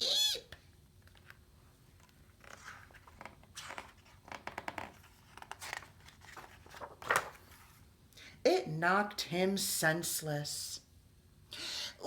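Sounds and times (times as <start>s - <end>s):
paper rustling and crinkling: 2.0s - 7.8s.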